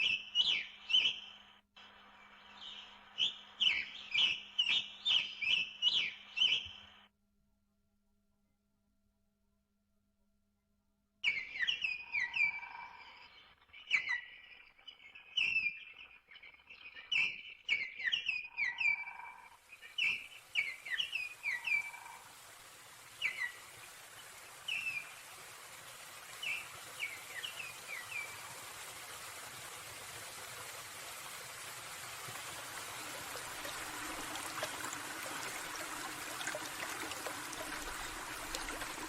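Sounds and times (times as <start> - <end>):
small birds chirping: 2.2 - 7.0, 11.2 - 22.4, 23.1 - 25.6, 26.2 - 28.8, 32.6 - 39.0
running water rushing: 19.6 - 39.0.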